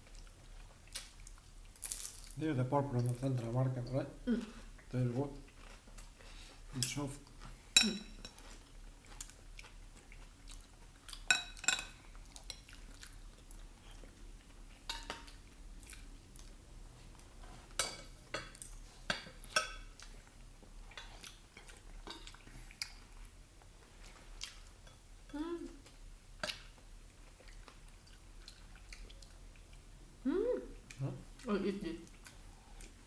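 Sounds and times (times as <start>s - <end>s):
quiet chewing: 0.0s - 2.4s, 3.0s - 33.0s
cutlery clinking on plates: 11.3s - 12.7s, 14.9s - 15.4s, 17.7s - 20.0s.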